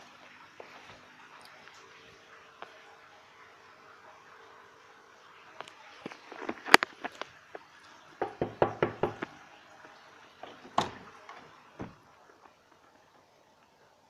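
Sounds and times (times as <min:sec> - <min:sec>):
knocking on a door: 0:08.2 - 0:09.3.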